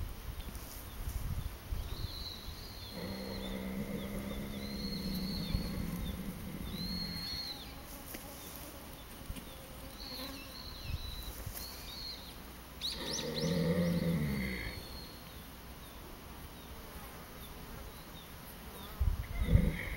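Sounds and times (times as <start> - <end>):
small birds chirping: 0.4 - 19.9
horse snoring: 2.9 - 7.6, 12.9 - 14.9, 19.4 - 19.9.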